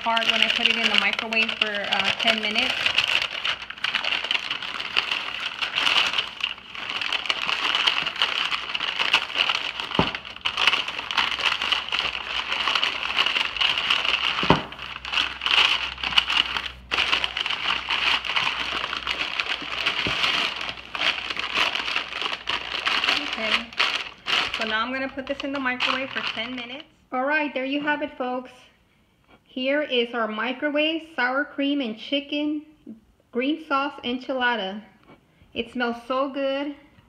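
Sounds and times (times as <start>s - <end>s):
paper bags crinkling: 0.0s - 26.9s.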